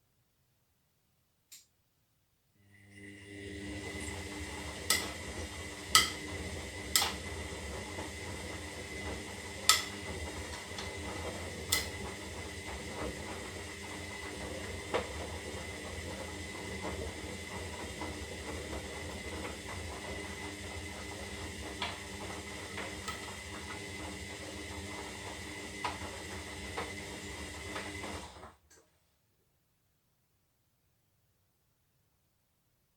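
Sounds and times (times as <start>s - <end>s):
washing machine motor hum: 2.6s - 28.6s.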